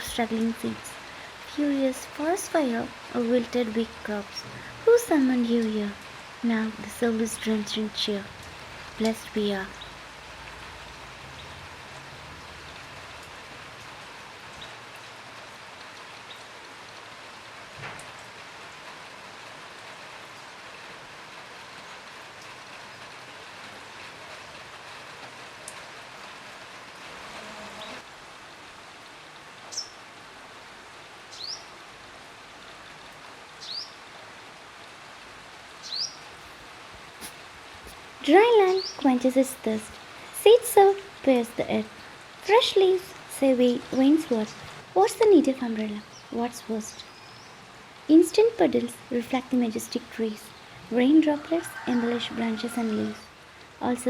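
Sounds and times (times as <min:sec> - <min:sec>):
steady rain falling: 0:00.0 - 0:54.0
raindrop hits: 0:03.5 - 0:20.6
bird chirping: 0:46.0 - 0:47.6.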